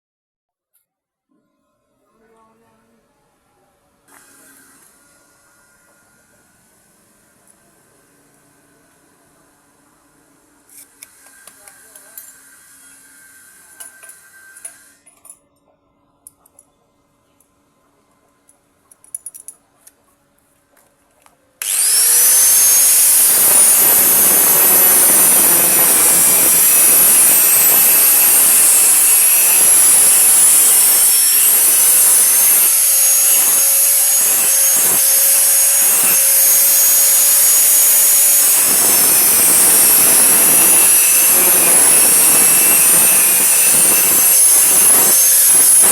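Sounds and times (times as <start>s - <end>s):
angle grinder grinding steel: 21.6s - 45.9s.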